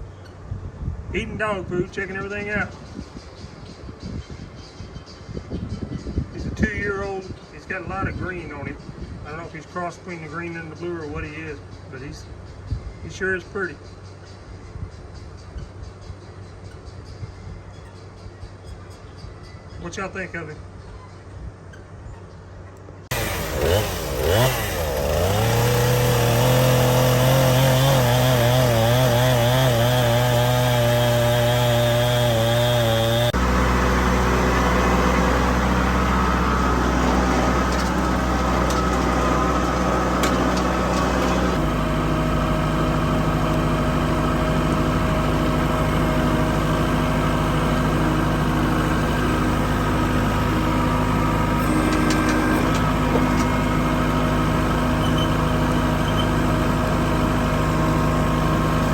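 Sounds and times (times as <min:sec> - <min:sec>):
engines running: 0:23.1 - 0:58.9.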